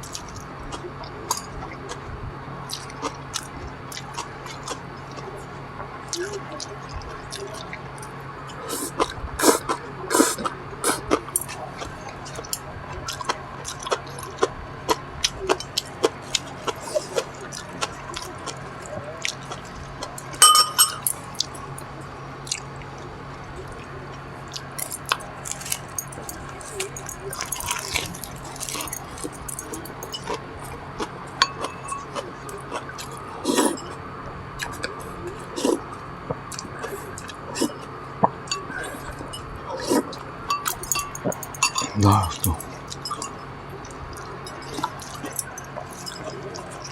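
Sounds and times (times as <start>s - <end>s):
chewing: 2.7s - 5.3s, 6.1s - 20.4s, 23.8s - 34.0s, 34.6s - 46.9s
utensils clinking on dishes: 20.3s - 21.3s, 24.8s - 34.0s, 38.5s - 43.5s, 44.4s - 46.9s.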